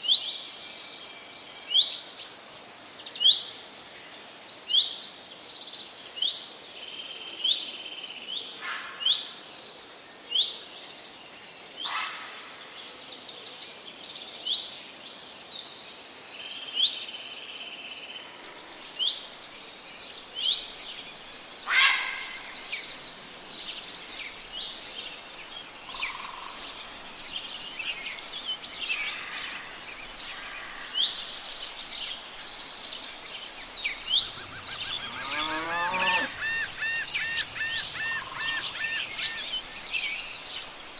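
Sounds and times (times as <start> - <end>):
faint steady hiss: 0.0 - 40.9
songbirds chirping and trilling: 0.0 - 40.9.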